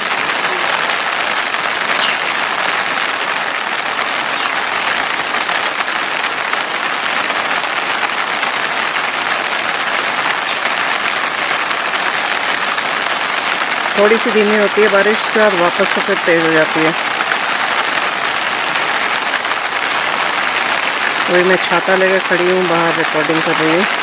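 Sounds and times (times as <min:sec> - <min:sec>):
heavy rain falling: 0:00.0 - 0:24.0.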